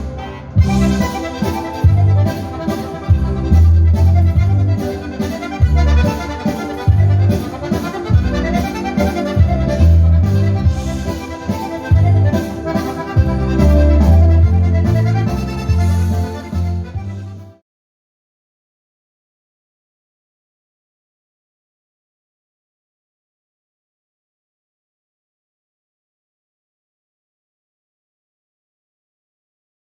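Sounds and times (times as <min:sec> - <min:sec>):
accordion dance music: 0:00.0 - 0:17.6.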